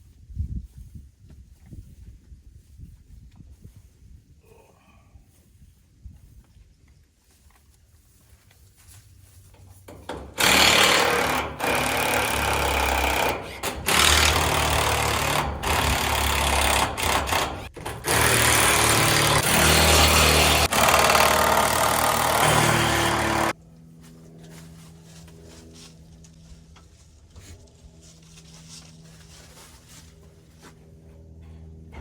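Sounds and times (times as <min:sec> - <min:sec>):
battery power tool running: 0:10.1 - 0:23.6
low hum: 0:19.4 - 0:32.0.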